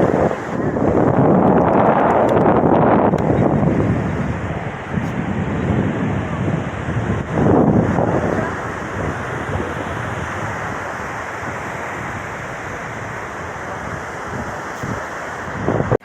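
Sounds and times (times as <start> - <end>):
ocean surf washing: 0.0 - 16.0
wind buffeting microphone: 0.0 - 16.0.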